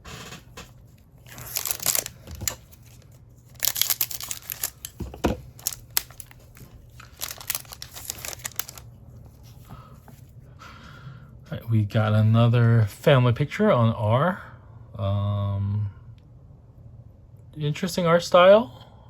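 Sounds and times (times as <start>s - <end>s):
plastic packaging crinkling: 0.6s - 9.7s.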